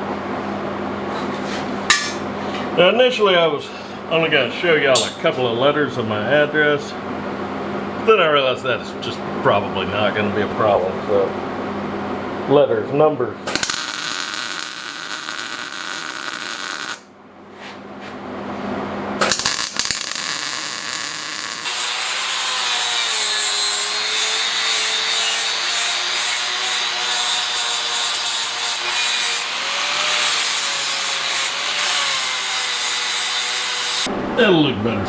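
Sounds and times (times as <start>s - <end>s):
power tool grinding steel: 13.6s - 17.0s, 19.2s - 34.1s.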